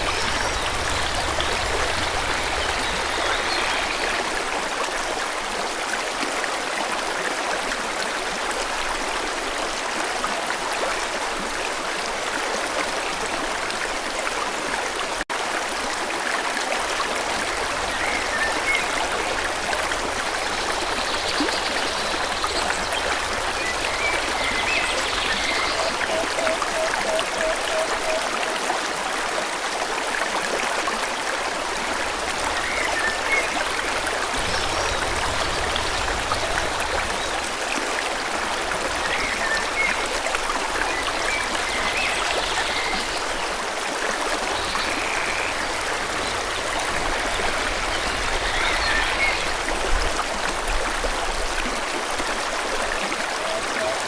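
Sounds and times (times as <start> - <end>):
stream rushing: 0.0 - 54.0.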